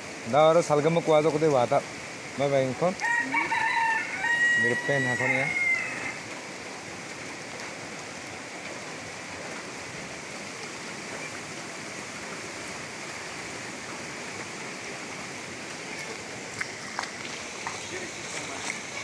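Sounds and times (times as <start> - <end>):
water rushing: 0.0 - 19.0.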